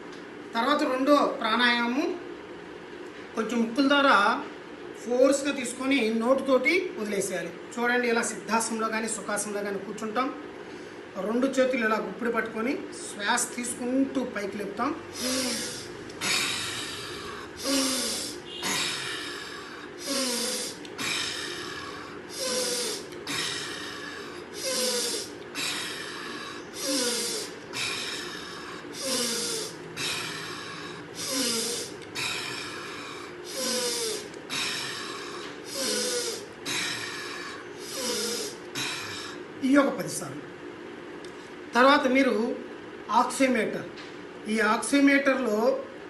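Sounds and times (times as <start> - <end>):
man breathing forcefully: 15.1 - 39.6.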